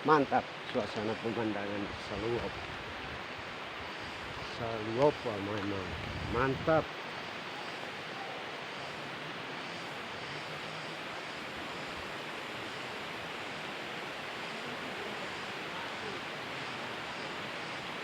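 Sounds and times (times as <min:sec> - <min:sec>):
water rushing from waterfall: 0:07.7 - 0:18.0.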